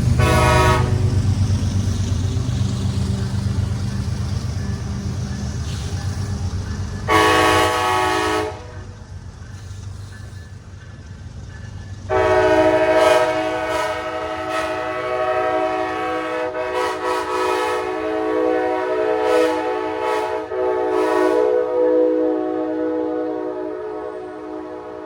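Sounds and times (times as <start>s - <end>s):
locomotive horn blast: 0.0s - 1.3s, 7.1s - 8.9s, 12.1s - 25.0s.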